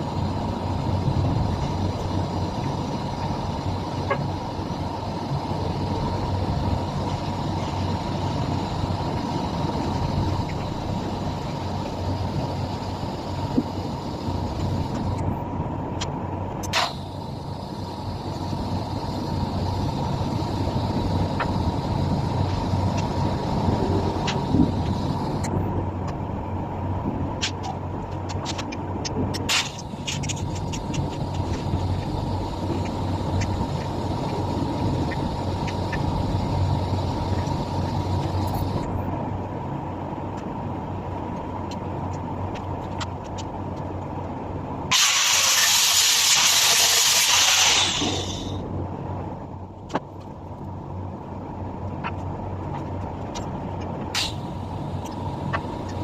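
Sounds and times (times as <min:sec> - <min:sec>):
steady mechanical hum: 0:00.0 - 0:56.0
loud hiss: 0:44.9 - 0:48.6.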